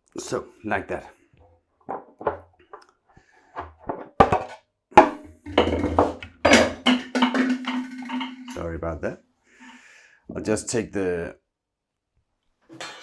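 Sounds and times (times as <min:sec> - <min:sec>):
knocks and clatter of parts: 0:03.6 - 0:08.6, 0:12.7 - 0:13.0.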